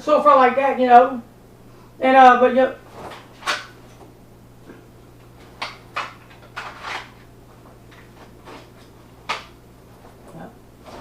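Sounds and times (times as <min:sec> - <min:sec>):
steady low hum: 0:00.0 - 0:11.0
clothing rustling: 0:02.7 - 0:05.6, 0:06.4 - 0:11.0.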